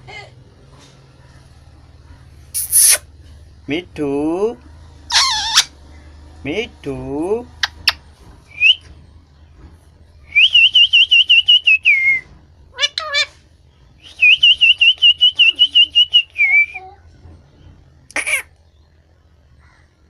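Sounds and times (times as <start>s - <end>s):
parrot warbling whistles: 2.6s - 3.0s
parrot squawk: 2.6s - 3.1s, 5.1s - 5.7s, 12.7s - 13.4s, 18.1s - 18.5s.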